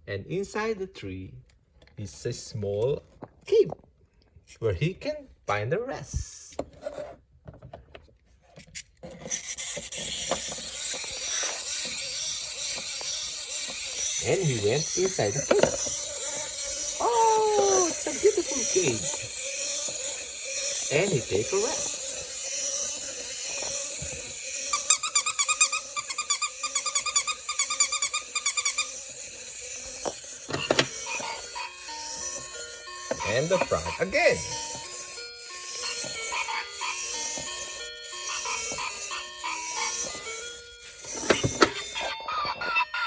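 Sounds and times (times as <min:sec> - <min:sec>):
rasping rubbing noise: 0:09.1 - 0:42.1
high squeaky chirps: 0:09.3 - 0:43.0.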